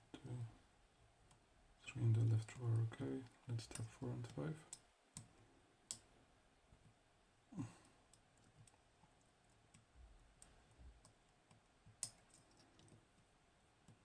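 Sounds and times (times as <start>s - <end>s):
lock pick clicking on pins: 9.7s - 13.1s.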